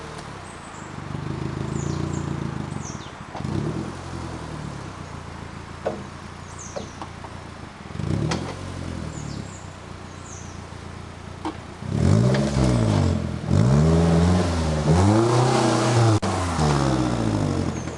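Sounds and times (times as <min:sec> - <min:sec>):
car engine revving: 0:00.0 - 0:06.7, 0:07.5 - 0:17.9
faint birds chirping: 0:00.1 - 0:12.0, 0:17.5 - 0:17.9.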